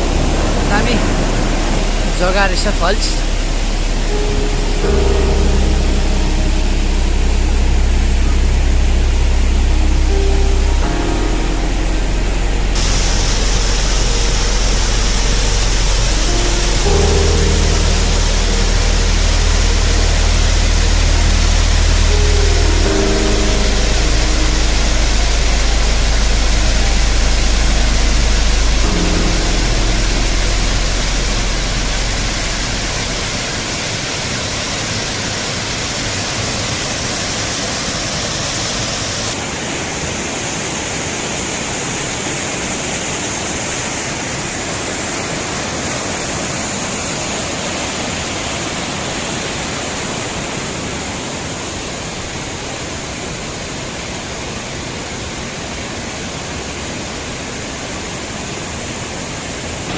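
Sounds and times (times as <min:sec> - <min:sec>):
deep rumble: 0:00.0 - 0:34.8
rush of falling water: 0:00.0 - 0:59.9.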